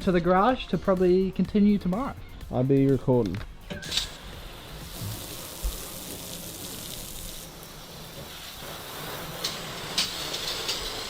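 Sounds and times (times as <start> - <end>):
water spraying from hose: 3.8 - 11.0.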